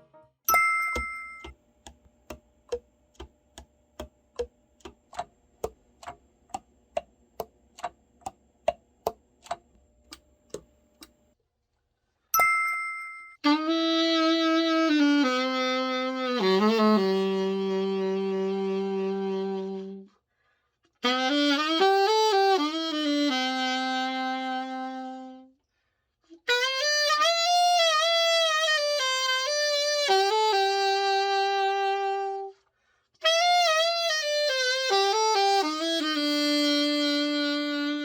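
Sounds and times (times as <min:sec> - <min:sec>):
solo saxophone melody: 0:13.4 - 0:20.2, 0:21.0 - 0:25.6, 0:26.4 - 0:32.6, 0:33.2 - 0:38.0.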